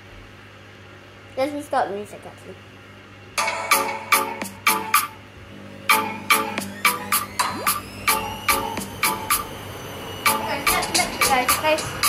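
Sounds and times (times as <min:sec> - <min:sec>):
music with steady beat: 0:03.4 - 0:05.2, 0:05.9 - 0:09.6, 0:10.2 - 0:12.0.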